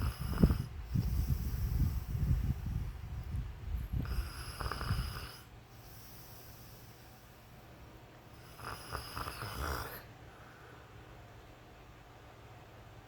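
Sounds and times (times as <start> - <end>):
man snoring: 0.0 - 0.7, 4.0 - 5.5, 8.4 - 10.1.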